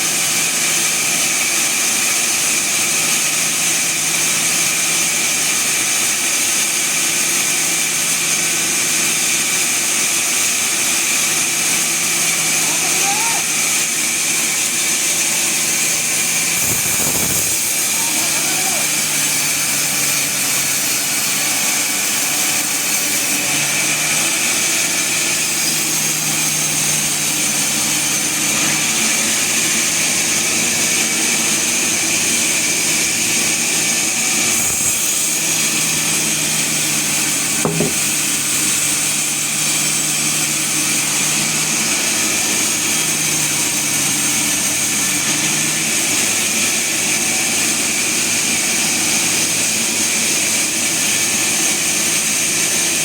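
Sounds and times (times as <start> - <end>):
sawmill machinery hiss: 0.0 - 53.0.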